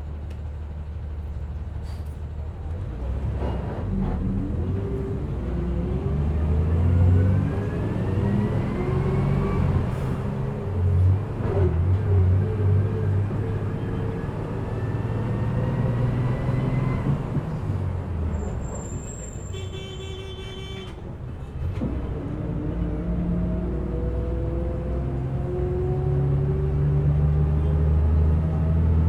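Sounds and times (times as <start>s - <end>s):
bus engine drone: 0.0s - 29.0s
bus horn: 18.8s - 21.2s.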